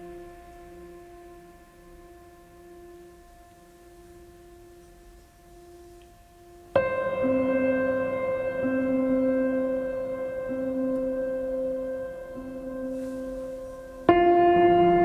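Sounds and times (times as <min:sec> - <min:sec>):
piano passage: 0:00.0 - 0:15.0
bell-like chord: 0:06.8 - 0:15.0.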